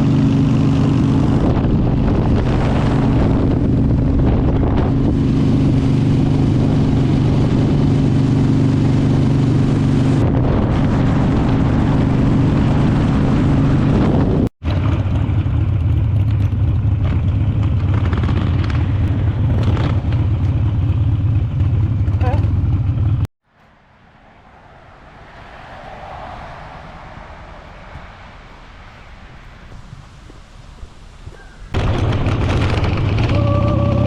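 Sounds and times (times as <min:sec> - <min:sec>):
motorcycle engine running: 0:00.0 - 0:23.3, 0:31.4 - 0:34.0.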